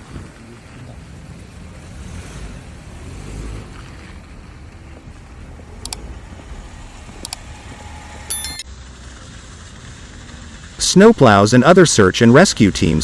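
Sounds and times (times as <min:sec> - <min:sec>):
car engine rumble: 0:00.0 - 0:11.4.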